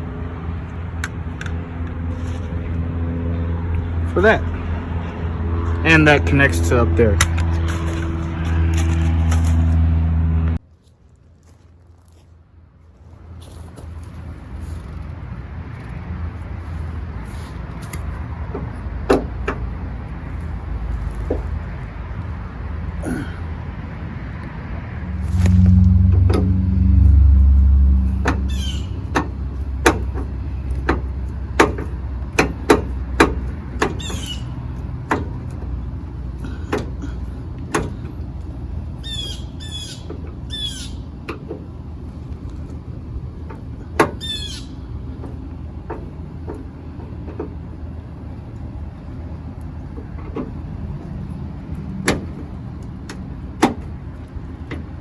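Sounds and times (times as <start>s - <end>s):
low rumble: 19.7s - 31.4s
hand tools clicking and tapping: 28.1s - 38.5s
short high squeaks: 33.9s - 34.6s.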